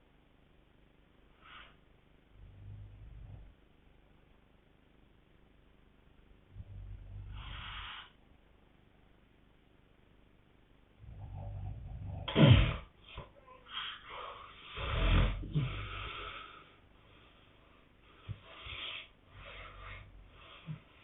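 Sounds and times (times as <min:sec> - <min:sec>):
people snoring: 0:06.5 - 0:08.2, 0:11.0 - 0:12.9, 0:14.7 - 0:16.6
wheezy breaths: 0:06.6 - 0:08.2, 0:11.2 - 0:21.0.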